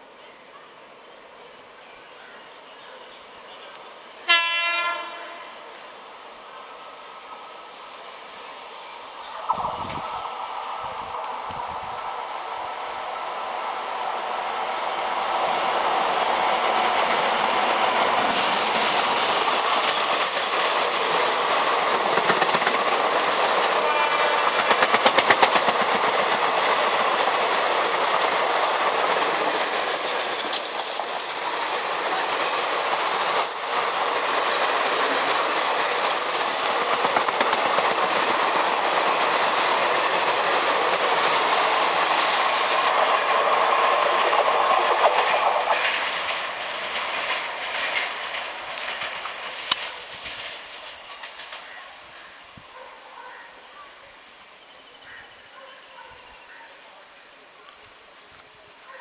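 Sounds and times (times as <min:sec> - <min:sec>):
train coaches rushing past: 0:03.1 - 0:52.8
train horn blast: 0:04.2 - 0:05.6, 0:23.8 - 0:24.6
wheels clacking over rail joints: 0:15.8 - 0:51.8.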